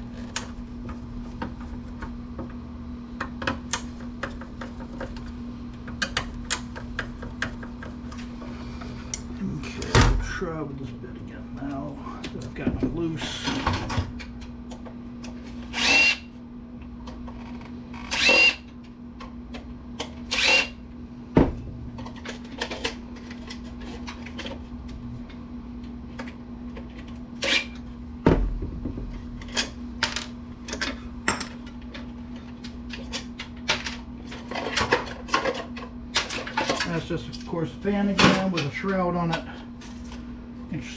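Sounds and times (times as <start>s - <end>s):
steady low hum: 0.0s - 40.9s
power drill spinning: 15.7s - 16.3s, 17.9s - 18.6s, 20.3s - 20.8s.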